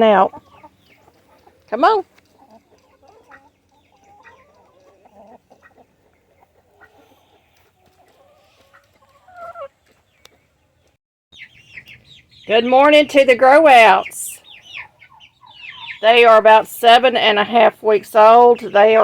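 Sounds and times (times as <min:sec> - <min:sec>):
chickens clucking softly: 0:00.1 - 0:12.4, 0:14.0 - 0:16.0.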